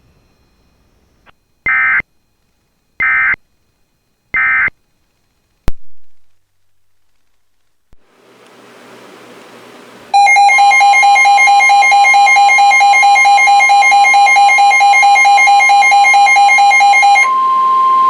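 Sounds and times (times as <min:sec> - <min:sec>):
steady warning alarm tone: 0:00.1 - 0:02.4, 0:03.0 - 0:03.6, 0:04.3 - 0:04.8, 0:10.1 - 0:18.0
rapidly pulsing alert beep: 0:03.0 - 0:03.4.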